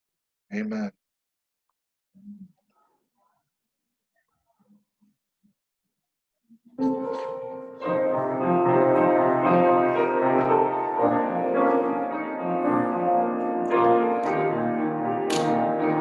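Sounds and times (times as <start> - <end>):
slow piano chords: 6.8 - 16.0.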